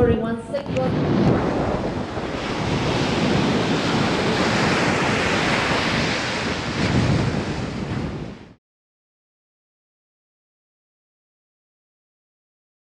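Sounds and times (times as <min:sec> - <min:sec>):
ocean surf on a beach: 0:00.0 - 0:08.6
wind buffeting microphone: 0:00.0 - 0:08.6.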